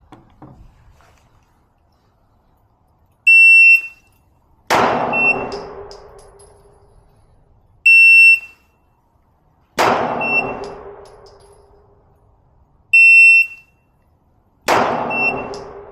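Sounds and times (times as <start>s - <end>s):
pistol shot ringing: 4.7s - 6.8s, 9.8s - 11.8s, 14.7s - 15.9s
shot timer beep: 5.1s - 5.6s, 10.2s - 10.8s, 13.0s - 13.7s, 15.1s - 15.7s.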